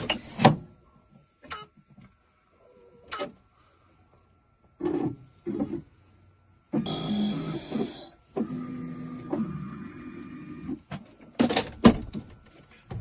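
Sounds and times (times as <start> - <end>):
key-cutting machine whining: 6.8 - 10.5.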